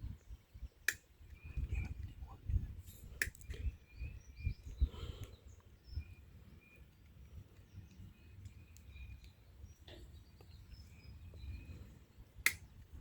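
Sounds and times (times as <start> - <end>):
faint bird chirps: 0.0 - 12.8
sharp clicks: 12.4 - 12.7.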